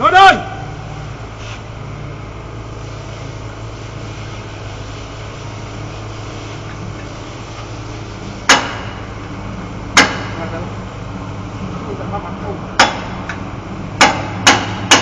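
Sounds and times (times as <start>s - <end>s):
engine running steadily: 0.0s - 15.0s
sharp loud knock: 10.0s - 10.4s, 14.0s - 15.0s.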